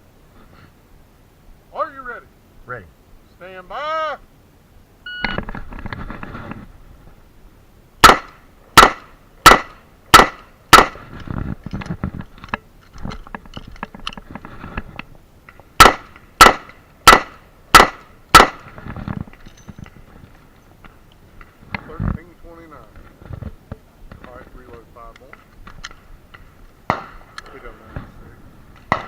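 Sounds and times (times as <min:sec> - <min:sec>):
revolver gunshots: 0:08.0 - 0:11.1, 0:15.8 - 0:18.8, 0:26.8 - 0:28.1.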